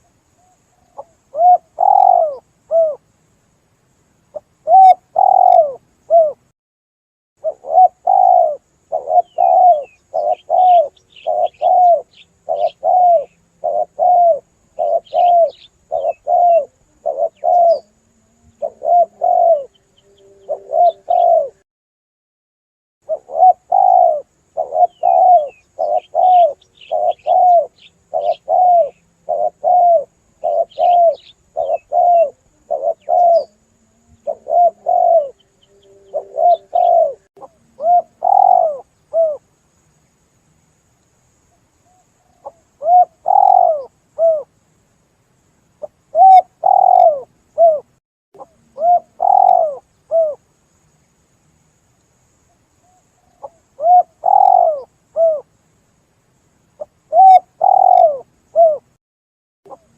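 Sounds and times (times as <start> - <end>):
dove cooing: 0.0 - 3.0, 4.3 - 6.5, 7.4 - 21.6, 23.0 - 39.4, 41.9 - 44.5, 45.8 - 50.4, 52.8 - 55.5, 56.8 - 58.9
small birds chirping: 0.0 - 3.0, 3.9 - 6.4, 7.4 - 21.6, 23.0 - 40.2, 41.0 - 44.5, 45.8 - 51.2, 52.0 - 55.7, 56.7 - 58.9.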